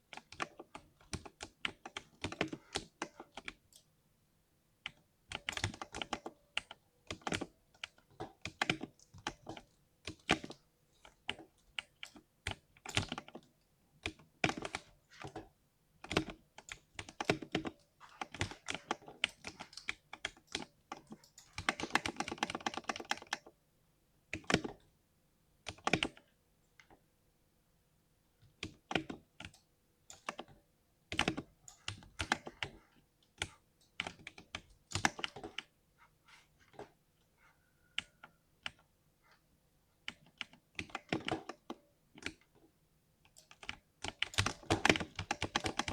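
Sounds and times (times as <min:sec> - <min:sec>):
mechanical keyboard typing: 0:00.1 - 0:03.9, 0:04.9 - 0:23.6, 0:24.3 - 0:24.9, 0:25.7 - 0:26.2, 0:28.6 - 0:32.8, 0:33.4 - 0:35.7, 0:40.0 - 0:42.5, 0:43.3 - 0:45.9.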